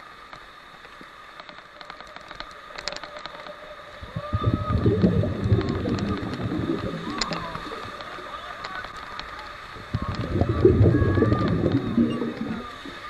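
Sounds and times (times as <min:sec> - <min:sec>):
rushing river water: 0:00.0 - 0:13.0
water splashes: 0:00.4 - 0:13.0
wind buffeting microphone: 0:04.0 - 0:07.8, 0:09.8 - 0:13.0.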